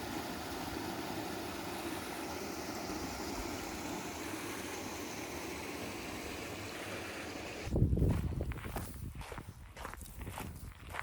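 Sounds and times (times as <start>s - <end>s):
waterfall rushing: 0.0s - 7.7s.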